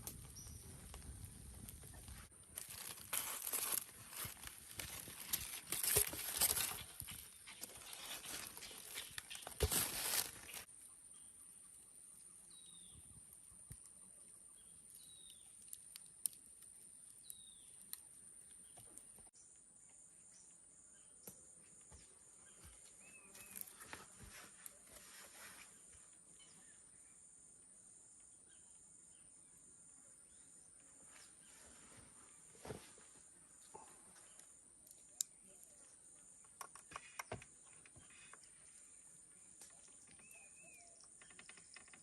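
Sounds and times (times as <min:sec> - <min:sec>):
leaves rustling and crackling: 0:00.0 - 0:10.7.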